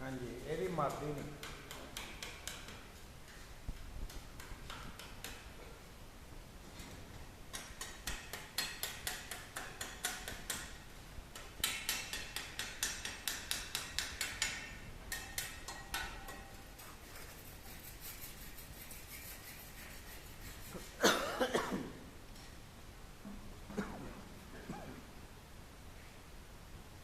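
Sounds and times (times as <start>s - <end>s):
sharp taps on hard surface: 0.8s - 5.4s, 11.4s - 16.5s.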